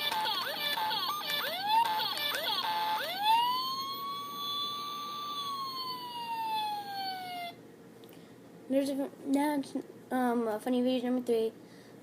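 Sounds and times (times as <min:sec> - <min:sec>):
siren-like wail: 0:00.0 - 0:07.6.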